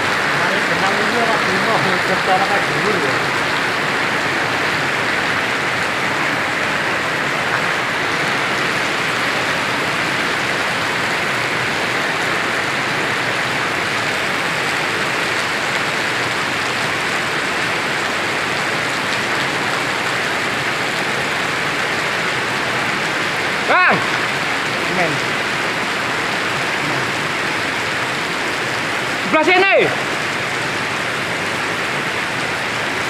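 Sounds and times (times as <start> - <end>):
heavy rain: 0.0 - 33.0.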